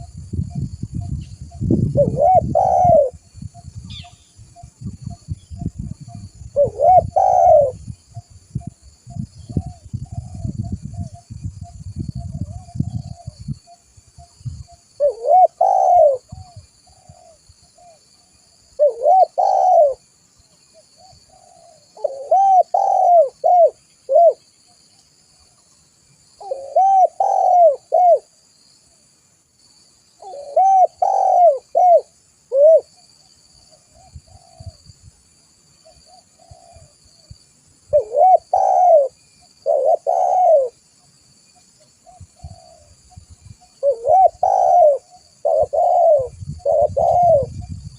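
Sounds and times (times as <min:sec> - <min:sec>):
dove cooing: 0:01.8 - 0:03.2, 0:05.7 - 0:08.7, 0:15.0 - 0:18.0, 0:18.8 - 0:20.1, 0:21.0 - 0:24.4, 0:26.4 - 0:28.4, 0:30.2 - 0:33.0, 0:34.0 - 0:34.8, 0:35.8 - 0:37.3, 0:37.9 - 0:40.8, 0:42.0 - 0:47.9.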